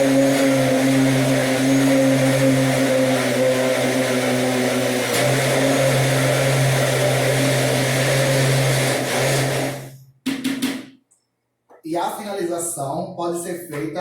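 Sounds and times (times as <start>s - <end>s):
blender motor running: 0.0s - 10.0s.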